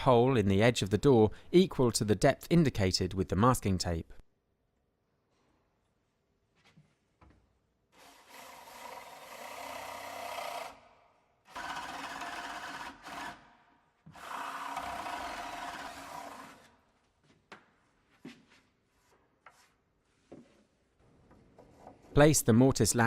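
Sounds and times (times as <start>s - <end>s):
power drill boring into wood: 8.0s - 10.8s, 11.5s - 13.4s, 14.1s - 16.7s.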